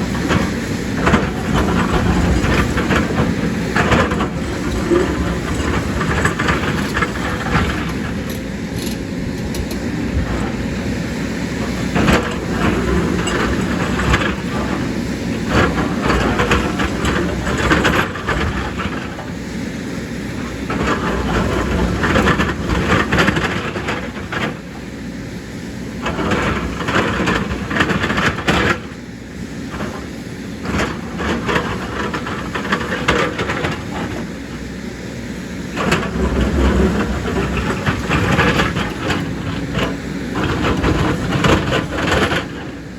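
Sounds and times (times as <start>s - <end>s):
excavator diesel engine running: 0.0s - 42.9s
metallic clanks and scraping: 1.0s - 10.6s.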